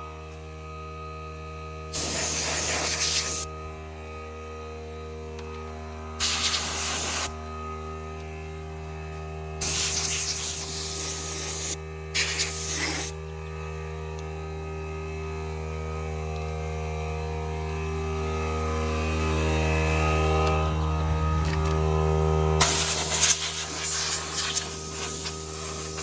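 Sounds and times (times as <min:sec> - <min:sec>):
steady low hum: 0:00.0 - 0:26.0
compressed air hissing: 0:01.9 - 0:03.5, 0:06.2 - 0:07.3, 0:09.6 - 0:13.1, 0:22.6 - 0:26.0.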